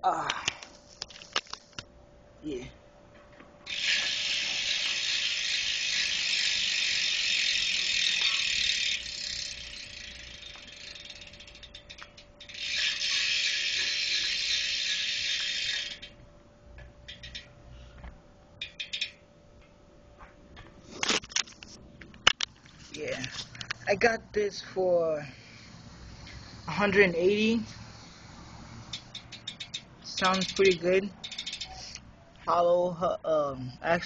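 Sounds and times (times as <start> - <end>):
bicycle hub ratcheting clicks: 3.6 - 16.2, 16.8 - 17.6, 18.6 - 19.2, 25.6 - 32.0.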